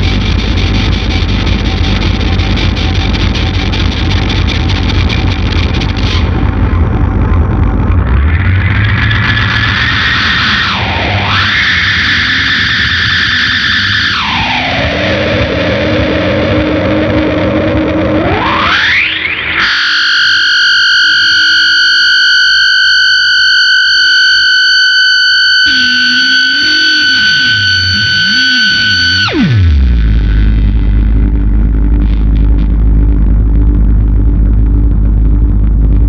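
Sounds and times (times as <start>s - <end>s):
distorted electric guitar with echo: 0.0s - 36.0s
held high guitar tone: 9.2s - 33.4s.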